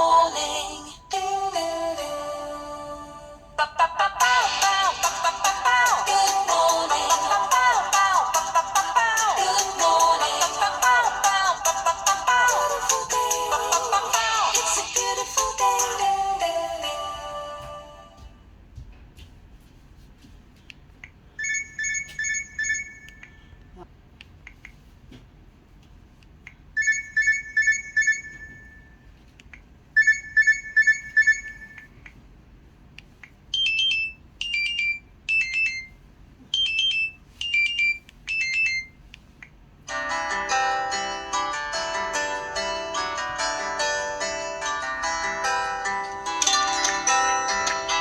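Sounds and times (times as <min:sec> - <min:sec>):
warbling phone ring: 0:21.4 - 0:23.6, 0:26.8 - 0:29.0, 0:30.0 - 0:31.8.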